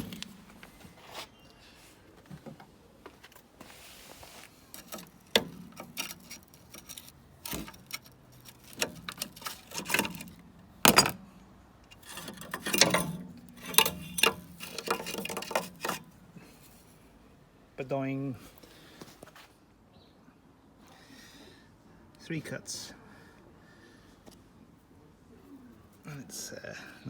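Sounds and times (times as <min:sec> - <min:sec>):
tool scraping on metal: 0:04.2 - 0:11.2, 0:11.9 - 0:16.1
metallic clinks and knocks: 0:04.8 - 0:11.2, 0:11.9 - 0:16.0.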